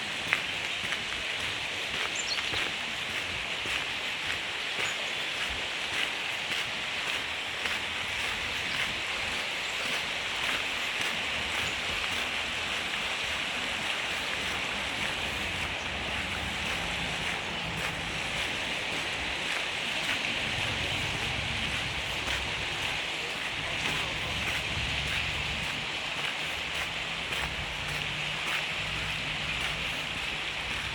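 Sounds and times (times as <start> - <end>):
water rushing: 0.0 - 30.9
wind rumble on microphone: 6.6 - 30.9.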